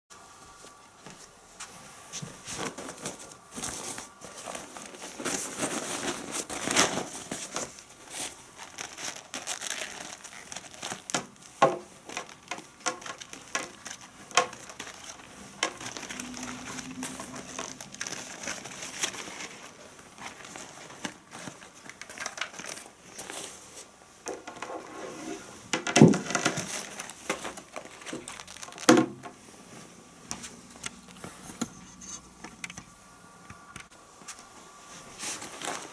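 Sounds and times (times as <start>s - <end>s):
plastic crinkling and rustling: 0.5s - 33.0s, 34.1s - 35.9s.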